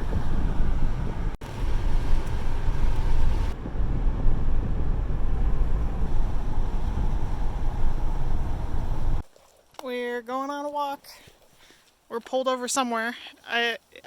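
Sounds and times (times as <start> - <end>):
road and engine rumble in car: 0.0 - 9.2.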